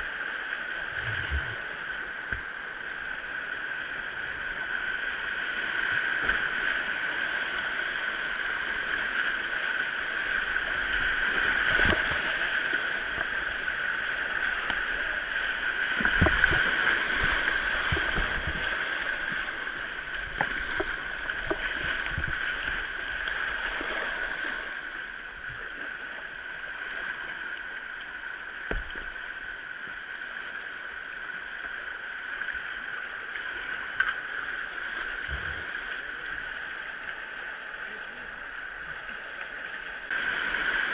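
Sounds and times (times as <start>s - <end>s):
mountain stream rushing: 0.7s - 25.5s, 37.0s - 40.9s.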